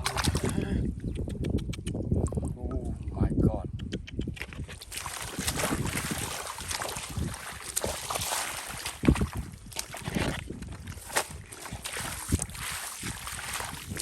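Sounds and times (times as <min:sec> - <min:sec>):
shallow water splashing: 0:00.0 - 0:00.8, 0:04.8 - 0:14.0.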